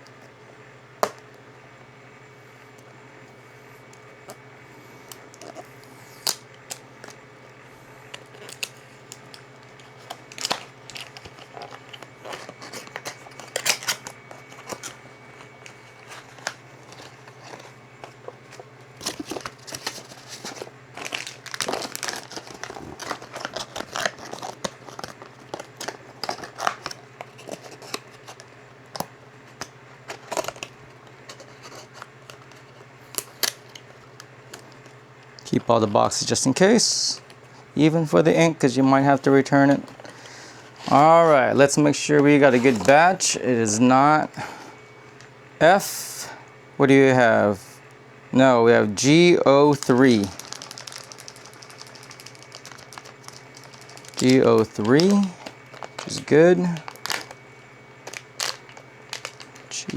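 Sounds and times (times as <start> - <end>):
steady low hum: 0.0 - 59.9
packaging crinkling and tearing: 5.1 - 7.2, 8.0 - 37.6, 42.2 - 43.2, 49.1 - 59.9.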